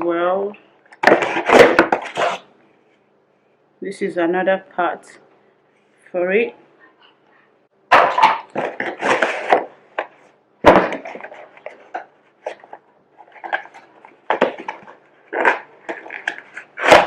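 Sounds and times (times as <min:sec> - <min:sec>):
packaging rustling: 0:10.8 - 0:17.0.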